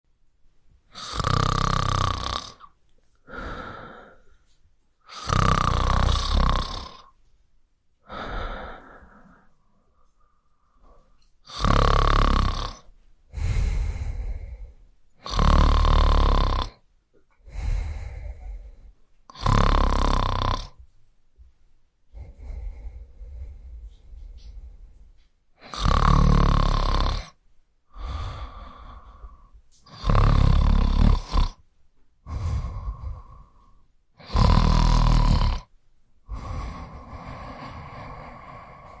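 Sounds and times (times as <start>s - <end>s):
person snoring loudly: 0.9s - 2.7s, 5.1s - 7.1s, 11.5s - 14.6s, 15.2s - 16.8s, 17.5s - 20.8s, 25.6s - 31.6s, 32.3s - 35.7s, 36.3s - 39.0s.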